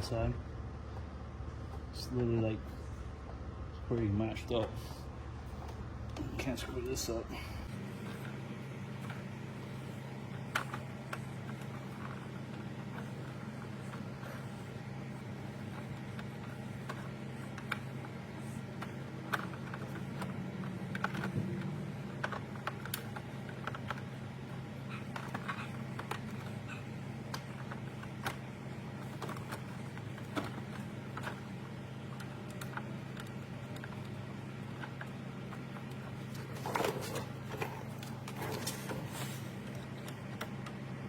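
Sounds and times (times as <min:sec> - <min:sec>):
steady low hum: 0:00.0 - 0:41.0
clicks and taps of plastic parts: 0:15.7 - 0:24.2, 0:24.9 - 0:31.5.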